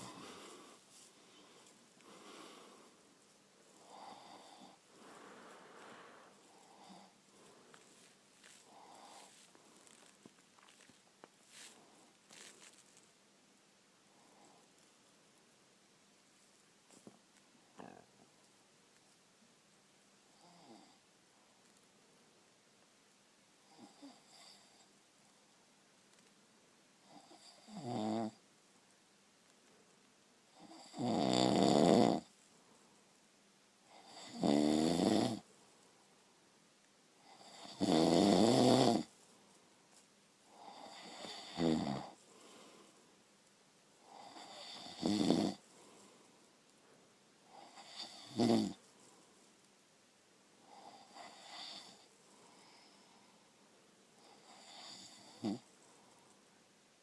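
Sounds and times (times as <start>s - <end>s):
person snoring heavily: 3.8s - 7.2s, 30.6s - 32.3s, 34.0s - 35.4s, 37.3s - 39.1s, 40.5s - 42.2s, 44.0s - 45.6s, 47.5s - 48.8s, 54.4s - 55.6s.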